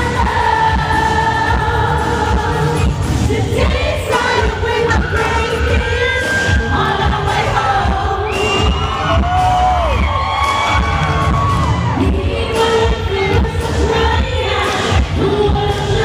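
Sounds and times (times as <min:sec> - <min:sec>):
crowd noise: 0:00.0 - 0:16.0
pounding dance beat: 0:00.0 - 0:16.0.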